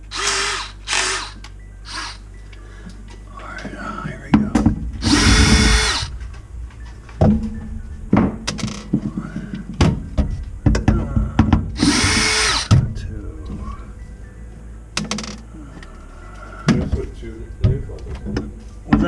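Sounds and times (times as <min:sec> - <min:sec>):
power drill running: 0:00.0 - 0:02.2, 0:05.0 - 0:06.1, 0:11.8 - 0:12.7
knocks and clatter of handling: 0:03.1 - 0:05.0, 0:06.2 - 0:11.8, 0:16.7 - 0:19.0.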